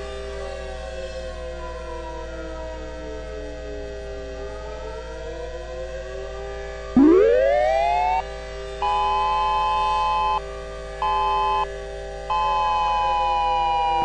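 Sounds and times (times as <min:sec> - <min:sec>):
siren rising wail: 0:06.9 - 0:10.4, 0:11.0 - 0:14.0
siren blasts: 0:06.9 - 0:14.0
steady background hum: 0:07.0 - 0:12.3.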